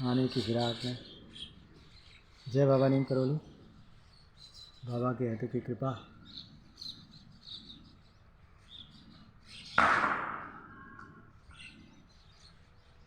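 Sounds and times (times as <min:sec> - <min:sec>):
small birds chirping: 0:00.0 - 0:09.8, 0:10.4 - 0:13.0
sudden loud sound: 0:09.8 - 0:10.8.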